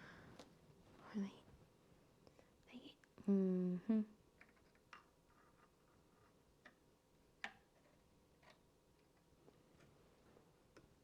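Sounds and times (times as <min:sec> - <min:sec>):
faint clicks and taps of small parts: 0:04.4 - 0:06.8, 0:07.4 - 0:10.0.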